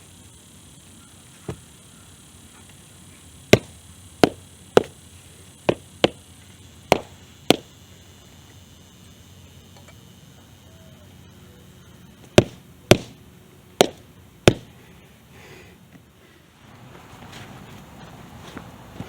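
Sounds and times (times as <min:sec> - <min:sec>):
sharp knocks on hard objects: 0:03.5 - 0:05.0, 0:06.9 - 0:07.7, 0:12.3 - 0:13.2, 0:13.8 - 0:14.7.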